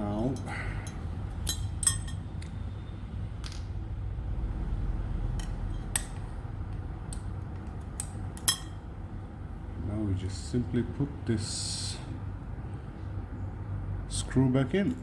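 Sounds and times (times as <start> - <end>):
small metal parts clinking: 0.3 - 2.5, 14.8 - 15.0.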